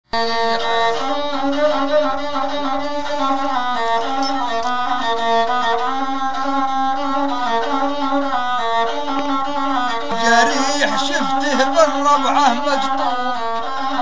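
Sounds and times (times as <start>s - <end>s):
bowed single-string fiddle melody: 0.1s - 14.0s.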